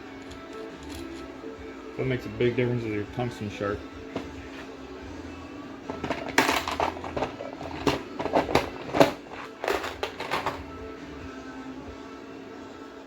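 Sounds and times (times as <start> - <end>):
hard objects clicking and knocking: 0.2 - 1.3, 5.9 - 10.7.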